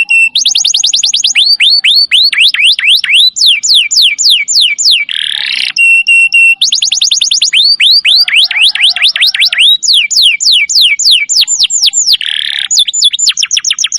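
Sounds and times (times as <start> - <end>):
canary singing: 0.0 - 13.9.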